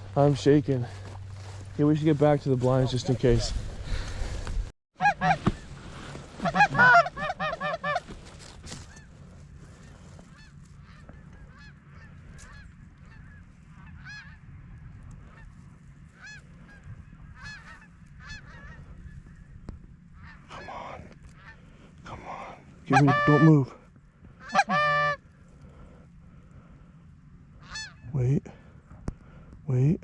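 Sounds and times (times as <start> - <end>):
goose honking: 5.0 - 19.5, 20.1 - 25.9, 27.5 - 28.2.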